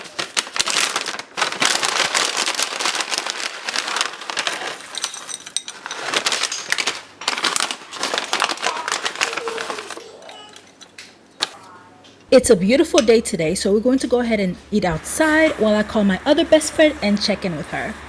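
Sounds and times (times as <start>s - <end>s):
plastic packaging crinkling: 0.0s - 11.6s.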